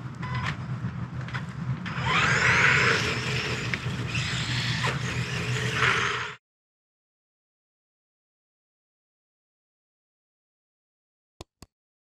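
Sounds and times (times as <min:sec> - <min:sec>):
electric motor whining: 0:01.9 - 0:06.4.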